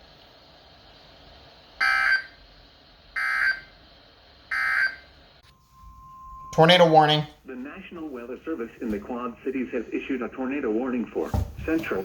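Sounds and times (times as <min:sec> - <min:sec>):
digital data tone bursts: 0:04.5 - 0:07.4.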